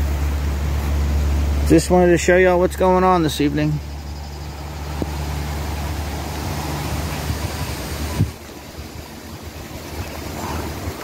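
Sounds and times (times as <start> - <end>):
gusty wind through trees: 0.0 - 11.0
steady low hum: 0.0 - 11.0.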